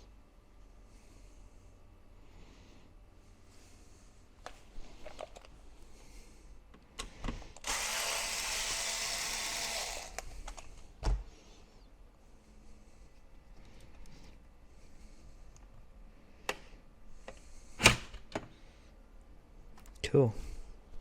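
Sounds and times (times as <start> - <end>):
electric screwdriver running: 7.6 - 10.2.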